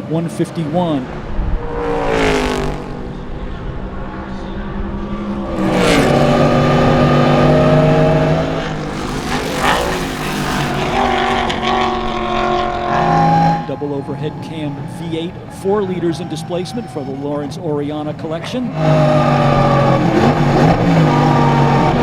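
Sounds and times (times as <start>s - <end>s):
race car engine revving: 1.0s - 12.8s.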